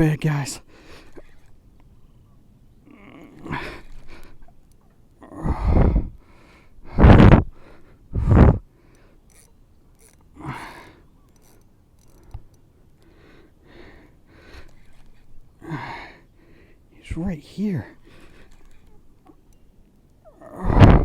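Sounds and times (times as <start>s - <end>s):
man gasping breaths: 5.2s - 9.2s, 10.4s - 11.1s, 13.0s - 16.9s.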